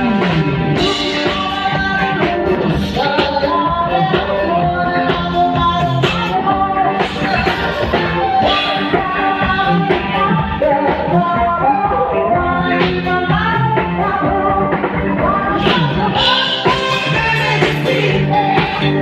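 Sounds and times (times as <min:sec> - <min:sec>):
pop rock song with singing: 0:00.0 - 0:19.0.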